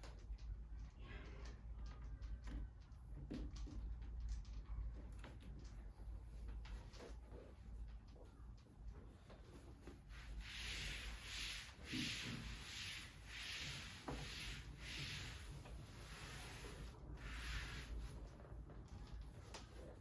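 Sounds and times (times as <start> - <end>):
rubbing strokes on surface: 9.8 - 18.3.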